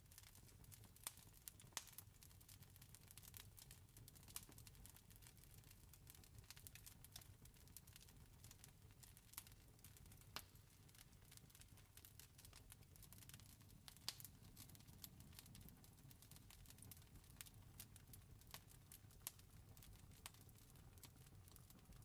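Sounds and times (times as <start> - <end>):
campfire crackling: 0.0 - 22.0
campfire pops: 1.0 - 2.0, 13.9 - 14.7.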